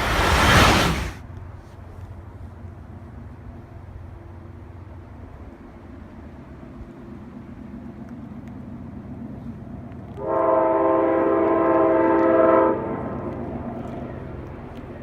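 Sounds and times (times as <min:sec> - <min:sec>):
train rumbling: 0:00.0 - 0:15.0
train horn blast: 0:10.2 - 0:13.4.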